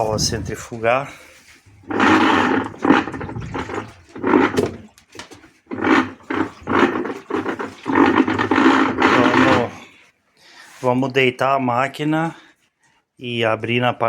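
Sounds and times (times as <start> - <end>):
washing machine rough rumbling: 1.7 - 9.8.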